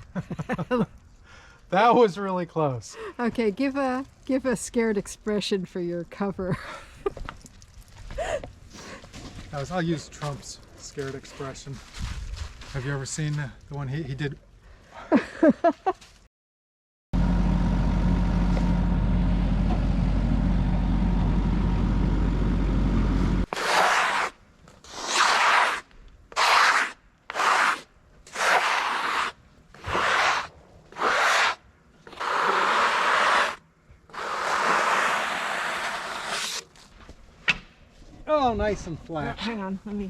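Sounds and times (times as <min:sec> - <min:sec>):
sawmill engine running: 0:17.2 - 0:23.5.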